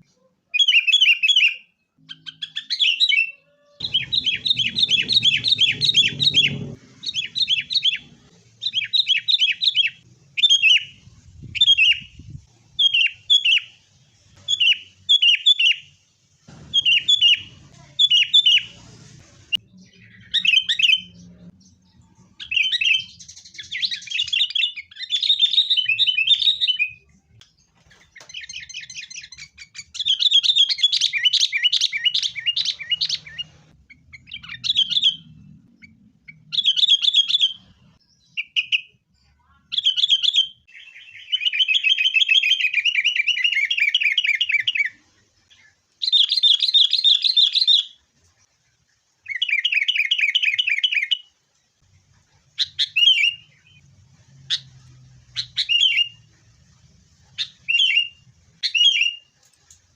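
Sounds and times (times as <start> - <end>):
birds chattering calls: 3.8 - 11.0.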